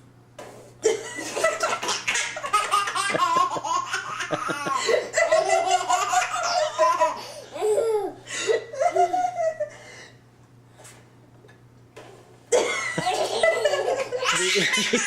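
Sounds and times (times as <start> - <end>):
girl giggling: 3.0 - 9.8, 12.6 - 15.0.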